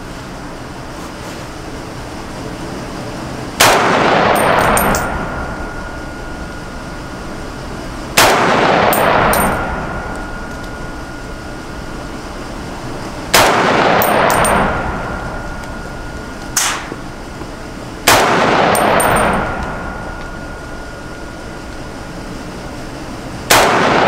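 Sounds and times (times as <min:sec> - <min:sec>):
rifle shots with echo: 0:03.6 - 0:05.6, 0:08.2 - 0:10.4, 0:13.3 - 0:15.8, 0:16.6 - 0:17.0, 0:18.0 - 0:21.2, 0:23.5 - 0:24.0.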